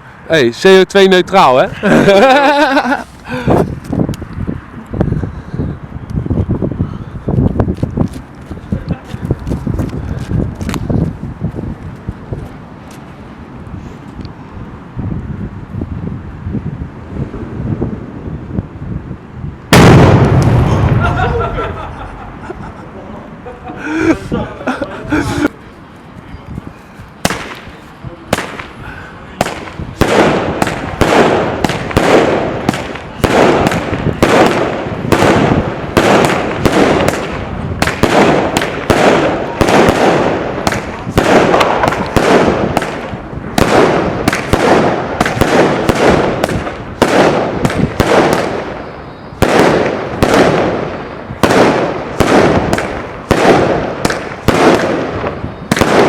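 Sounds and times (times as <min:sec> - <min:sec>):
fireworks bangs: 0:19.7 - 0:22.9, 0:27.2 - 0:56.0.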